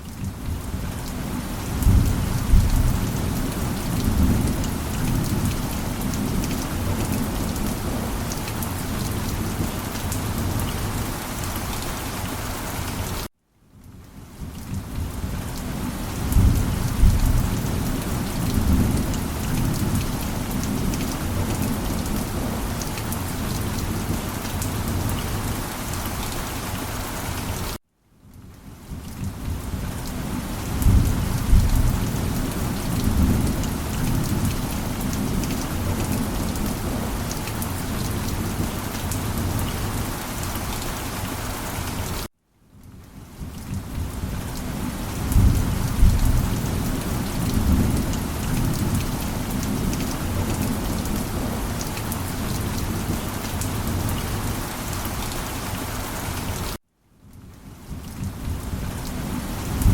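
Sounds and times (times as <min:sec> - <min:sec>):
heavy rain: 0:00.0 - 0:59.9
thunder rumbling: 0:01.7 - 0:08.2, 0:45.2 - 0:51.8.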